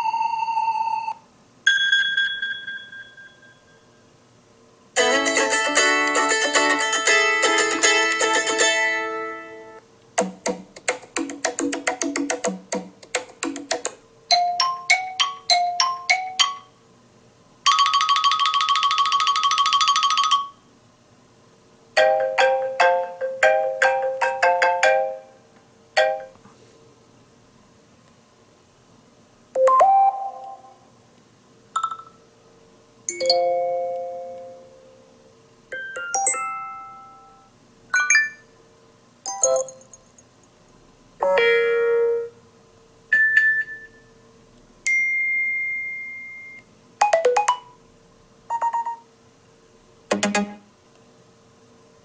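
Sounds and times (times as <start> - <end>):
repeating chime: 0.6 - 3.9, 35.7 - 38.5, 39.3 - 40.2
quick plucked notes: 5.0 - 9.0
chiming run of notes: 33.1 - 34.8, 35.7 - 38.5, 39.3 - 40.2.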